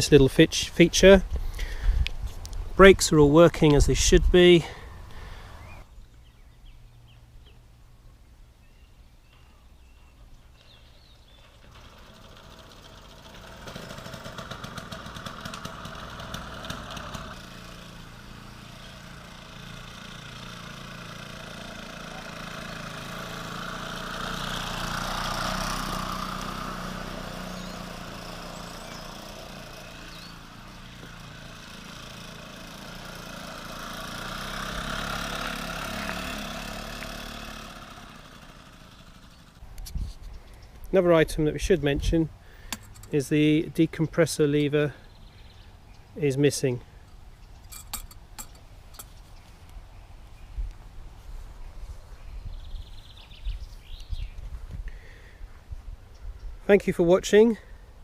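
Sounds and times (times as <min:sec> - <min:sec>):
moped two-stroke engine running: 0:11.2 - 0:39.7, 0:42.4 - 0:43.4, 0:46.9 - 0:49.2.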